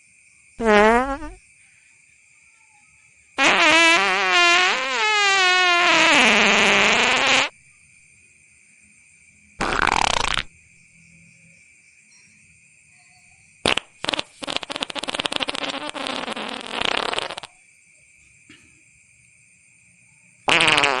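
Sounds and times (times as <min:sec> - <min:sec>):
night insects chirring: 0:00.0 - 0:21.0
fart-like blasts: 0:00.6 - 0:01.4, 0:03.4 - 0:07.5, 0:09.6 - 0:10.5, 0:13.6 - 0:17.5, 0:20.5 - 0:21.0.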